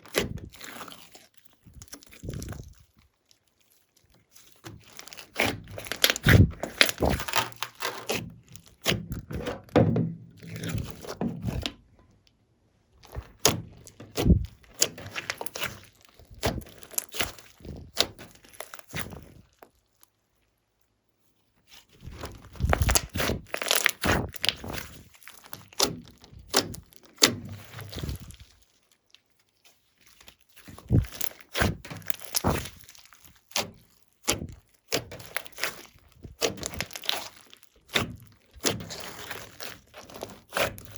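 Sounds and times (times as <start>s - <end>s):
slime squelching by hand: 0.0s - 12.3s, 12.9s - 20.4s, 21.6s - 40.9s.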